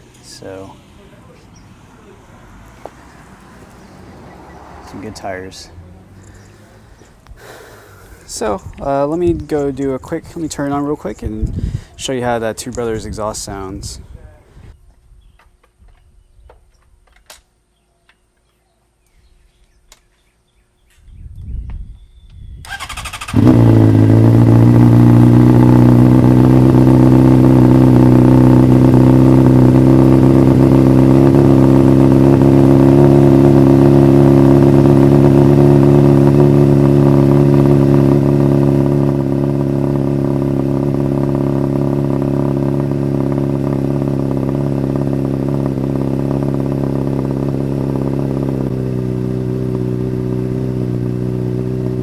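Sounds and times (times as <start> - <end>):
motorcycle engine idling: 22.7 - 52.0.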